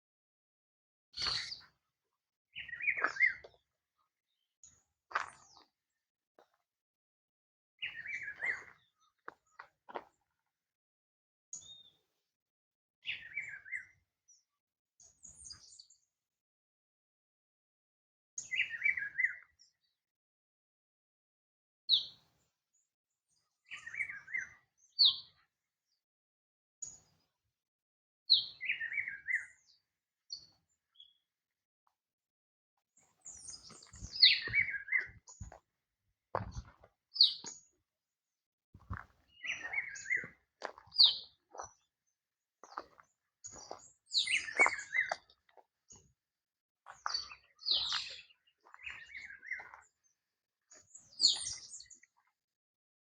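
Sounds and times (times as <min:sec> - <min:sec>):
songbird chirping: 0:01.2 - 0:01.8, 0:02.5 - 0:03.7, 0:07.8 - 0:10.2, 0:11.6 - 0:12.0, 0:13.0 - 0:16.0, 0:18.4 - 0:19.8, 0:23.3 - 0:25.5, 0:28.3 - 0:31.2, 0:33.0 - 0:35.6, 0:36.3 - 0:37.8, 0:38.8 - 0:41.9, 0:42.6 - 0:46.1, 0:46.8 - 0:52.3.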